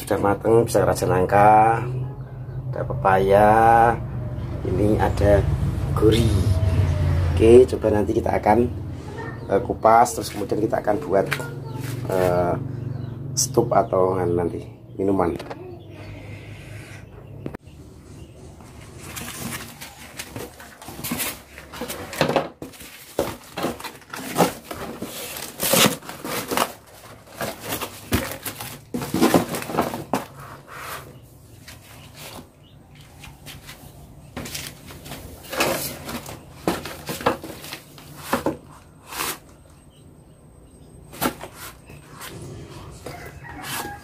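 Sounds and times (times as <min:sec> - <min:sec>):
rustling produce: 0:18.4 - 0:39.8, 0:41.1 - 0:44.0.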